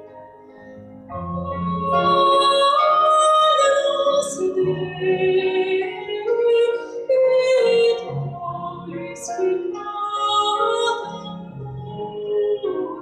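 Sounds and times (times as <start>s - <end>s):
woman singing sustained notes: 1.1s - 13.0s.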